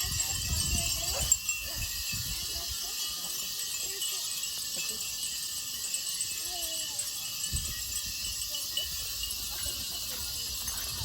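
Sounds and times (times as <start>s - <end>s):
wind rumbling on microphone: 0.0s - 2.8s, 7.4s - 11.0s
wind chimes tinkling: 0.0s - 11.0s.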